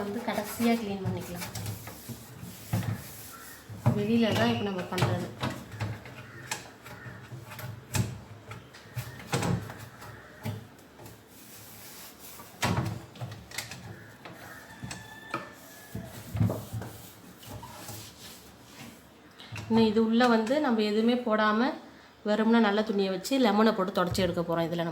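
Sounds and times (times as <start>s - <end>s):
damp cloth rubbing: 0.0s - 5.4s, 15.5s - 19.1s.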